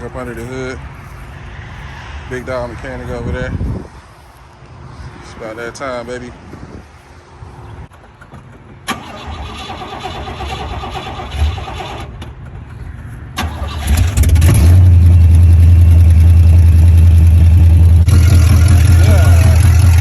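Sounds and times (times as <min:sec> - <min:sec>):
engine cranking on starter: 0:08.8 - 0:12.3, 0:13.4 - 0:15.6, 0:18.1 - 0:20.0
loud engine running: 0:13.7 - 0:20.0.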